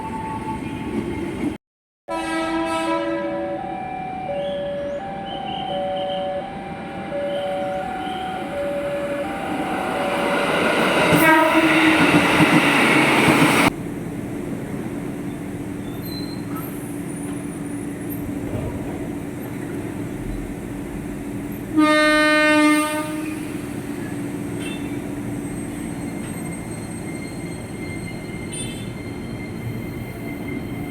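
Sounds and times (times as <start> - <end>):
loud train horn blast: 2.1 - 4.7, 6.2 - 12.4, 21.7 - 23.6
two-note train horn: 2.1 - 10.3, 10.9 - 12.2, 21.8 - 23.5
train passing: 3.4 - 30.9.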